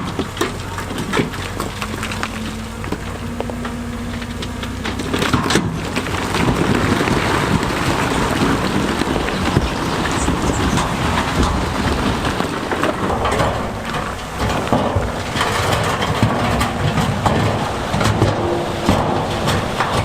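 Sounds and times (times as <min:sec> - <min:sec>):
diesel engine under load: 0:00.0 - 0:20.0
rocks grinding and knocking: 0:00.0 - 0:20.0.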